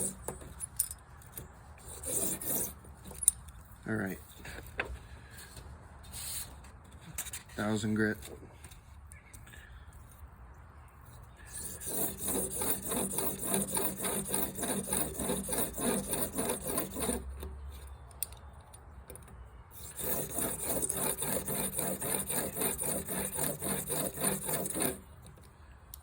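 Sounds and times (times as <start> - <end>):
blade rubbing on sharpening stone: 1.9 - 2.8, 11.5 - 17.2, 19.8 - 25.0.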